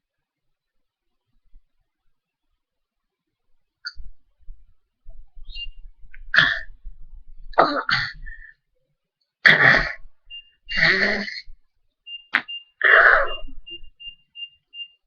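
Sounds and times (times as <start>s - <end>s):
person coughing harshly: 9.4s - 10.0s.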